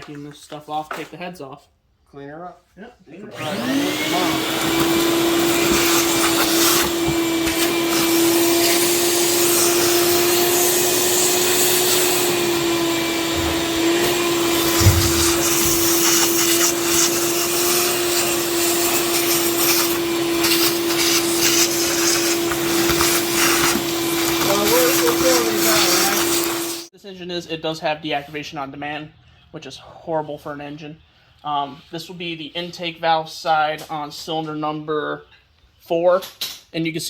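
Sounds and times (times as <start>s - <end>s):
vacuum cleaner whining: 3.3s - 26.9s.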